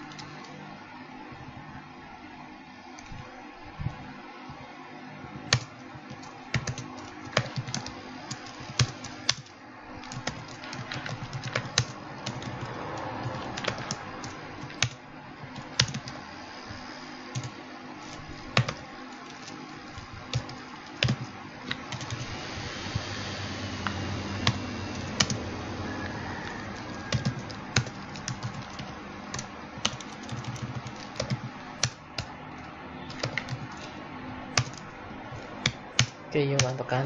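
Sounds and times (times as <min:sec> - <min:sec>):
typing on computer keyboard: 0:00.0 - 0:00.6, 0:05.5 - 0:16.3, 0:17.3 - 0:22.3, 0:24.4 - 0:25.5, 0:26.3 - 0:33.9, 0:34.5 - 0:36.8
low hum: 0:07.4 - 0:35.9.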